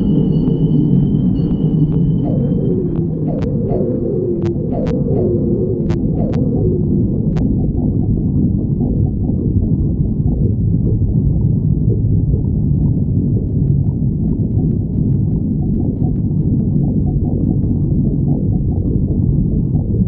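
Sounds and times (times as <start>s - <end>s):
stomach growling: 0.0s - 20.0s.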